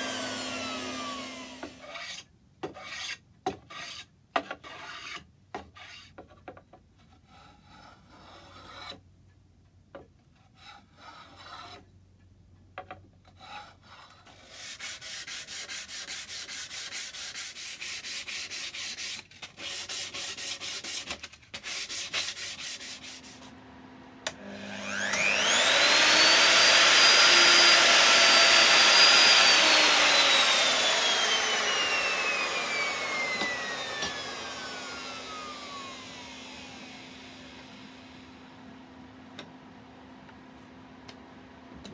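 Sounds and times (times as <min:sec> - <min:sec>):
electric power tool whining: 0:00.0 - 0:01.9, 0:24.2 - 0:38.5
hand sanding wood: 0:14.4 - 0:23.6, 0:24.8 - 0:36.7.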